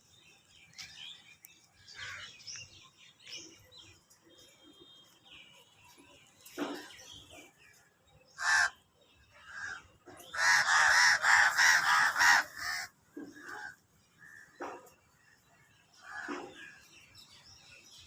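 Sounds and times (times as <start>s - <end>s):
crow cawing: 8.4s - 8.8s, 10.4s - 12.9s.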